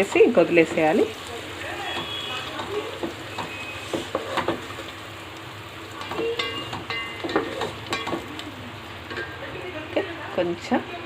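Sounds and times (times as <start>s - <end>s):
spatula scraping and tapping pan: 0.0s - 5.0s, 6.0s - 8.4s
food sizzling in oil: 0.0s - 11.0s.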